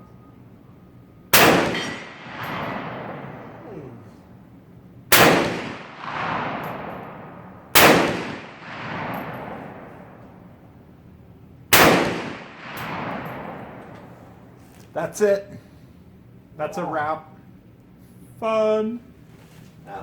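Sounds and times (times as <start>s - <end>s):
rolling echo of gunshot: 1.3s - 3.8s, 5.1s - 10.6s, 11.7s - 14.6s
rifle shots: 1.3s - 4.0s, 5.1s - 10.7s, 11.7s - 14.6s.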